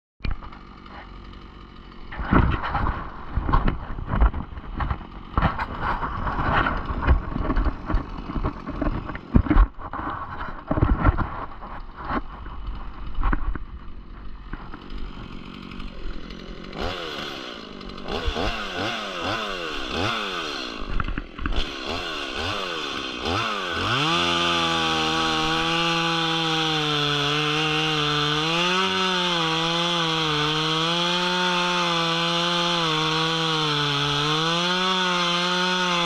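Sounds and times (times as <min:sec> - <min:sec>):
chainsaw running and revving: 0:00.2 - 0:36.0
irregular knocks and thumps: 0:02.3 - 0:11.4.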